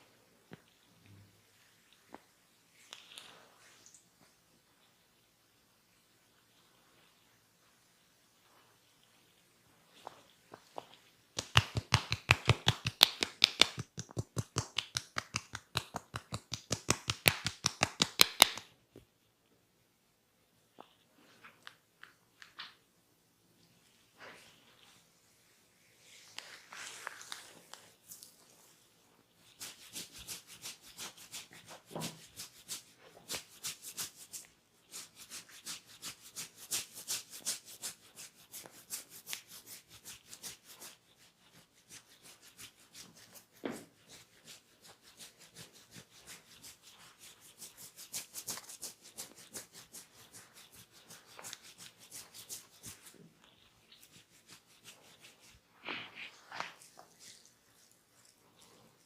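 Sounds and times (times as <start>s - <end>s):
hands scratching during head massage: 10.0s - 18.8s, 26.0s - 28.7s, 29.3s - 59.0s.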